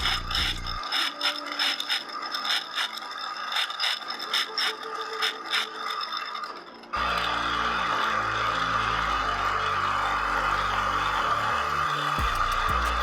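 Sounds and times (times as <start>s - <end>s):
power tool motor running: 0.0s - 13.0s.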